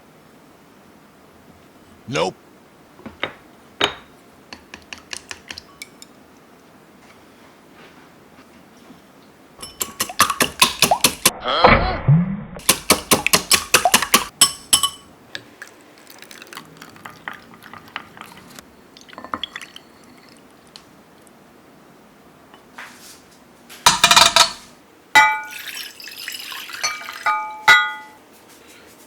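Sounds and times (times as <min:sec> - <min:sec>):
eggs beaten in a bowl: 0:04.5 - 0:06.0, 0:09.6 - 0:11.3, 0:12.6 - 0:15.0
liquid pouring: 0:15.4 - 0:20.8, 0:25.2 - 0:27.3.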